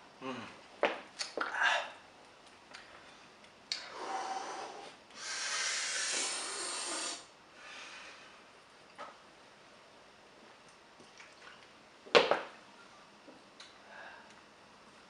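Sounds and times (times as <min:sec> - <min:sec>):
person breathing heavily: 0:03.8 - 0:08.4.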